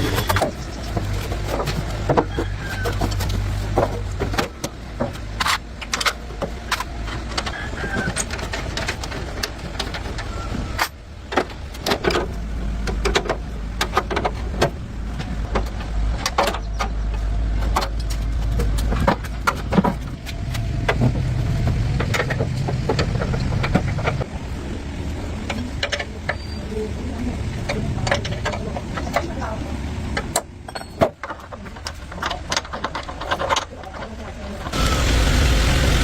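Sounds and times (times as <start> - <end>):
metal knocks and clinks: 30.6 - 31.2
machine hum: 34.7 - 36.0.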